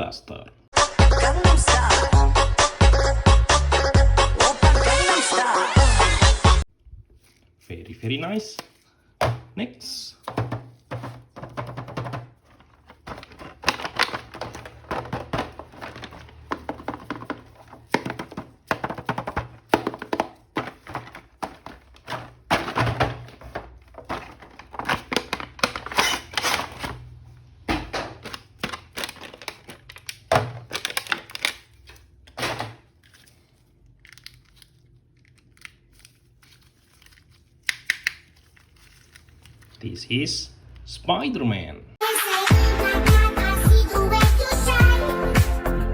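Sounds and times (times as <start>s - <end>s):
packaging crinkling and tearing: 12.4s - 27.2s, 28.2s - 32.3s, 32.9s - 39.8s.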